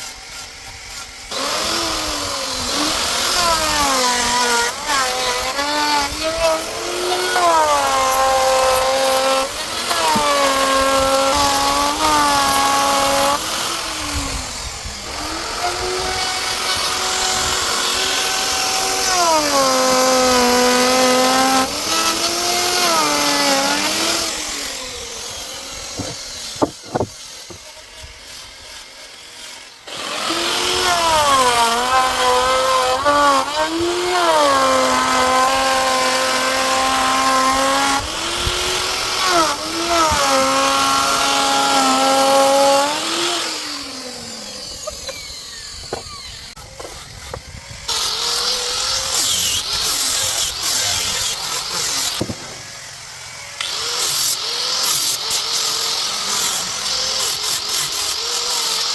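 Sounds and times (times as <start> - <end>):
power tool motor whine: 0.0 - 58.9
sharp knocks: 25.9 - 27.6.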